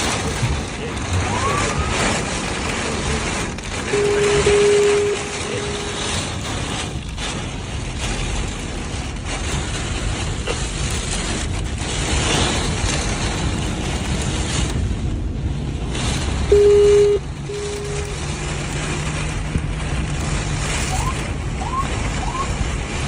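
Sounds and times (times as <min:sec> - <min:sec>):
wind rushing over microphone: 0:00.0 - 0:23.0
short single-pitch beeps: 0:03.9 - 0:05.8, 0:16.5 - 0:18.2.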